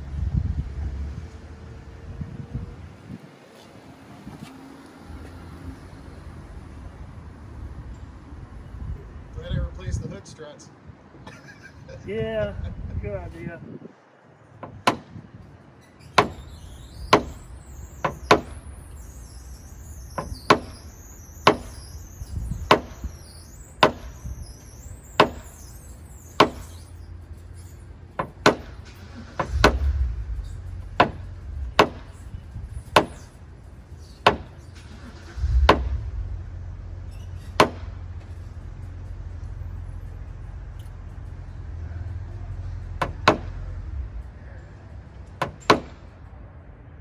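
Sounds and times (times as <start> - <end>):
low rumble: 28.8 - 45.3.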